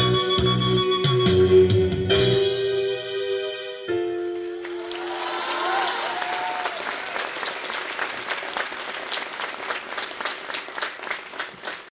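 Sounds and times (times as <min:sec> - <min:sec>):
audience applauding: 0:04.6 - 0:11.9.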